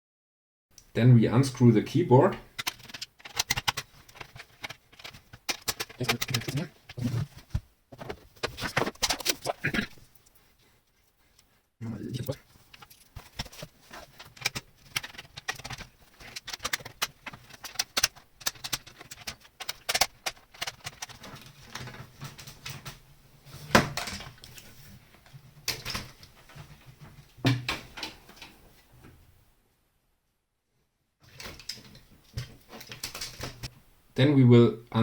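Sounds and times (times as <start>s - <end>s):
screwdriver and parts clicking: 2.6s - 6.7s, 12.7s - 21.4s.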